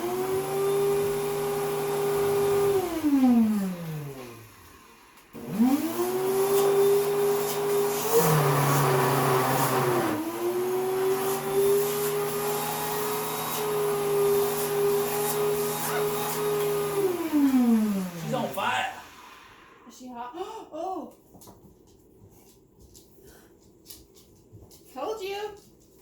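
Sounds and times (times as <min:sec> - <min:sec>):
vacuum cleaner motor whining: 0:00.0 - 0:19.8.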